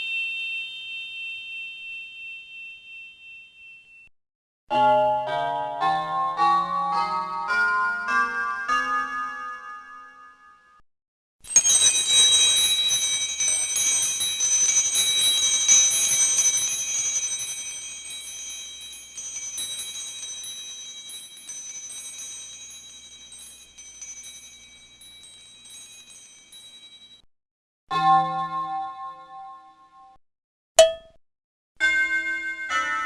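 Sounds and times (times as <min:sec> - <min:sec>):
pack bells jangling: 0:11.5 - 0:27.2.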